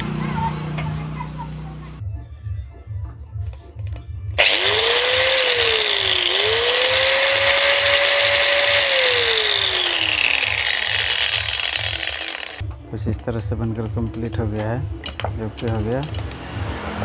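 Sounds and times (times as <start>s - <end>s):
angle grinder motor whine: 4.4s - 12.6s.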